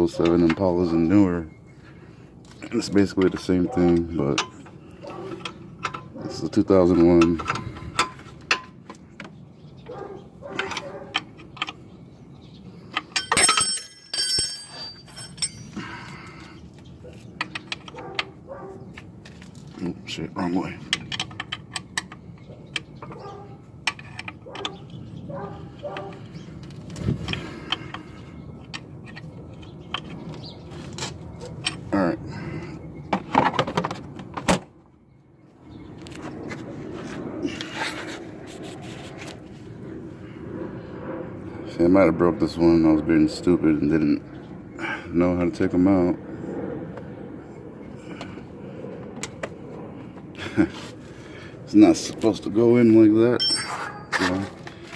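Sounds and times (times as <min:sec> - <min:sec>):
metal tools clinking: 0:13.0 - 0:16.3, 0:53.4 - 0:54.5
steady low hum: 0:34.0 - 0:54.9
hands rubbing and scraping car parts: 0:36.1 - 0:39.7.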